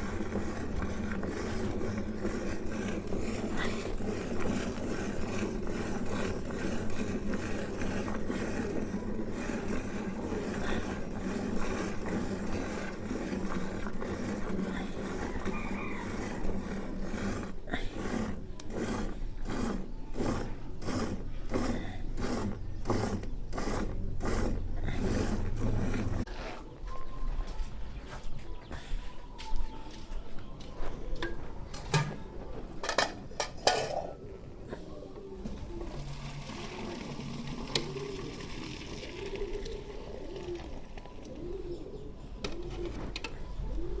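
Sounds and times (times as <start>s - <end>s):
milk squirting into pail: 0.0s - 26.2s, 35.6s - 41.4s
dove cooing: 14.7s - 16.5s, 34.0s - 44.0s.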